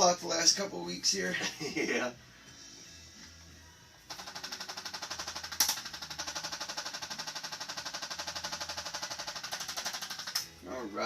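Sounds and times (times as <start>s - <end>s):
electric percussion tool hammering: 4.1s - 10.6s.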